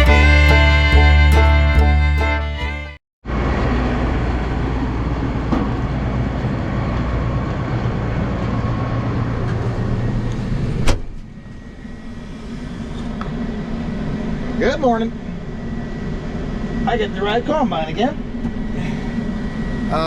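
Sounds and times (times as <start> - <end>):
combine engine hum: 0.0 - 2.9.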